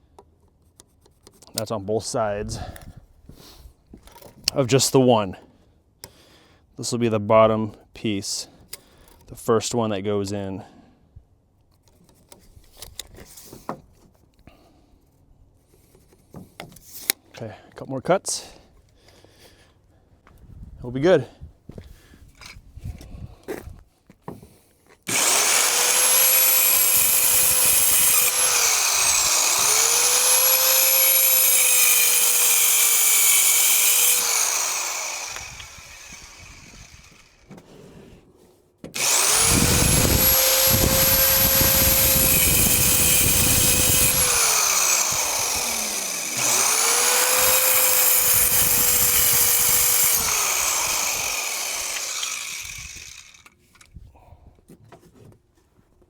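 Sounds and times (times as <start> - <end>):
power saw cutting wood: 25.1 - 37.6, 39.0 - 53.6.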